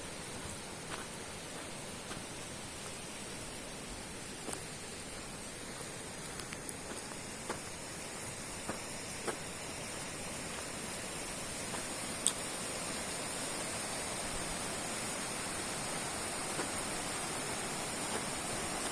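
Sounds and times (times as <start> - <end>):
fast river rushing: 0.0 - 18.9
faint irregular clicks: 6.2 - 7.6, 11.7 - 12.5.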